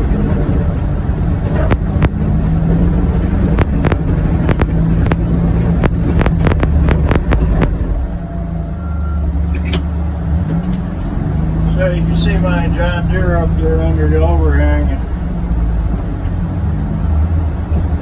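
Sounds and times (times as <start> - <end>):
sharp clicks and knocks: 0.0 - 8.1
utility vehicle engine running: 0.0 - 18.0.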